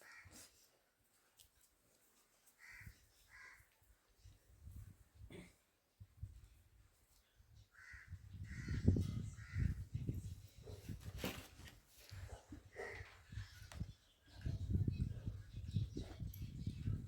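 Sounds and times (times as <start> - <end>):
crow cawing: 2.6 - 3.7, 7.8 - 8.8.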